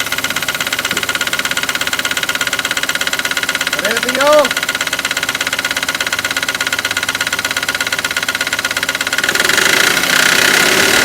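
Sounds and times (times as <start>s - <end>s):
diesel engine idling with knocking: 0.0s - 11.0s.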